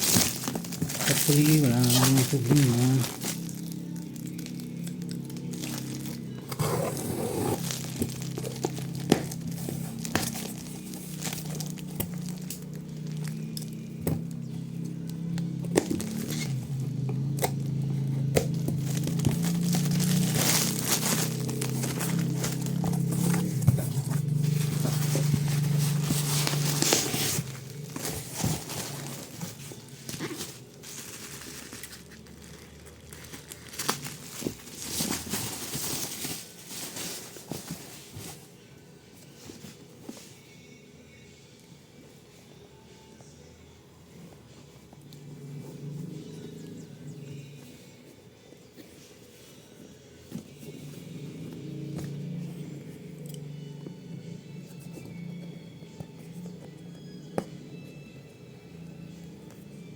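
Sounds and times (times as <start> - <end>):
packaging crinkling and tearing: 0.0 - 6.6, 7.5 - 13.8, 15.8 - 16.8, 17.6 - 37.6
background music: 0.0 - 59.9.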